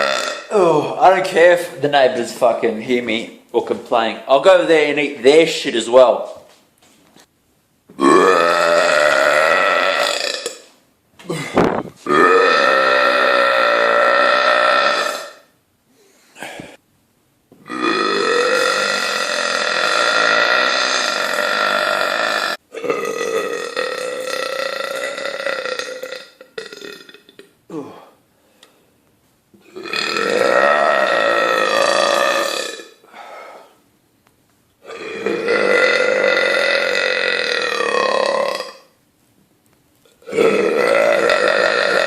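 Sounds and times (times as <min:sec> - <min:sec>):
man belching loudly: 0:00.0 - 0:01.0, 0:07.9 - 0:10.7, 0:11.3 - 0:15.5, 0:17.6 - 0:28.1, 0:29.6 - 0:33.0, 0:34.8 - 0:38.9, 0:40.2 - 0:42.0.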